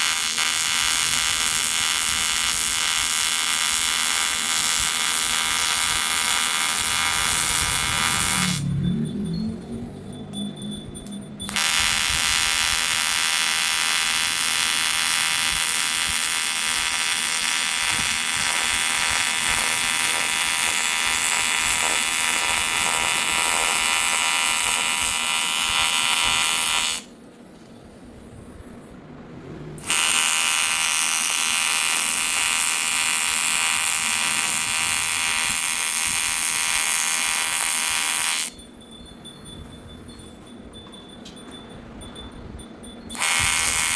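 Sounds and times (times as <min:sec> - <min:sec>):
welding arc buzzing: 0:00.0 - 0:08.7, 0:11.4 - 0:27.2, 0:29.8 - 0:38.8, 0:43.1 - 0:43.9.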